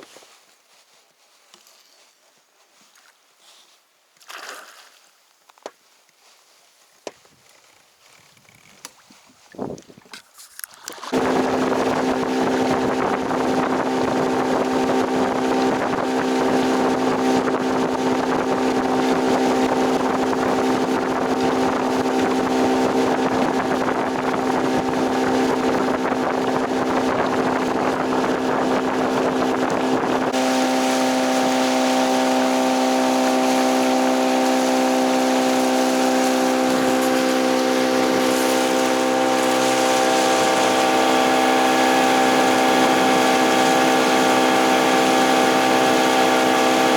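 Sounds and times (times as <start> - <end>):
wind and water noise: 7.0 - 46.9
outboard engine running: 10.9 - 46.9.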